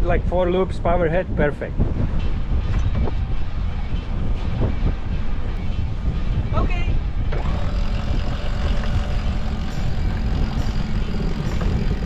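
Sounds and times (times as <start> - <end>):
steady hum: 1.8 - 12.0
motor running with low rumble: 7.2 - 12.0.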